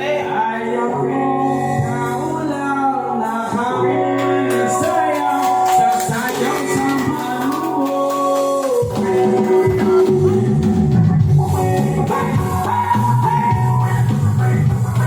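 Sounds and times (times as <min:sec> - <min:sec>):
live band with singer: 0:00.0 - 0:15.0.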